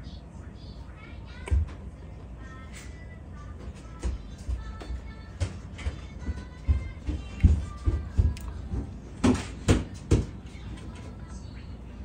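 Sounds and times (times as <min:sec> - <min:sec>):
background music with thudding beat: 0:03.6 - 0:10.4.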